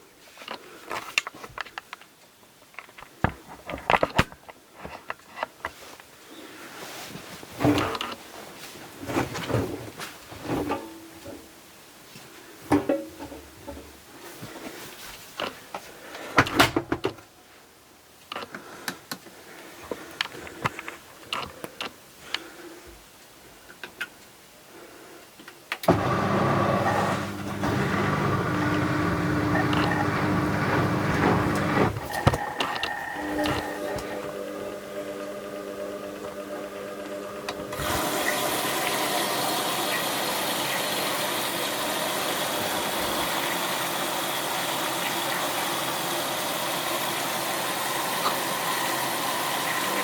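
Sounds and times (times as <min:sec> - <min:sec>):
washing machine rushing hum: 0:25.8 - 0:50.0.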